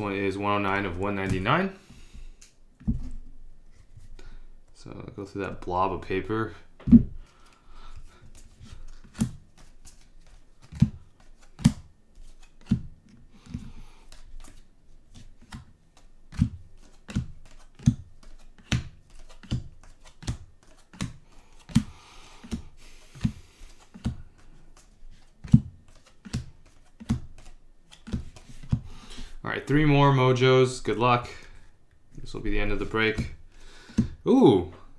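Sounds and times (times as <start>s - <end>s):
cards rustling against each other: 7.2s - 34.9s.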